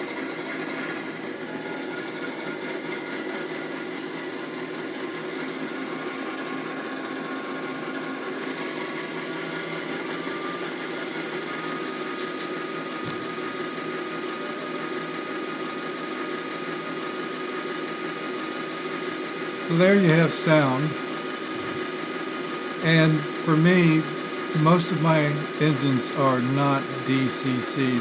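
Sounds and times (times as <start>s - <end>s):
locomotive engine from speaker: 16.8s - 28.0s
faint whine: 18.5s - 28.0s.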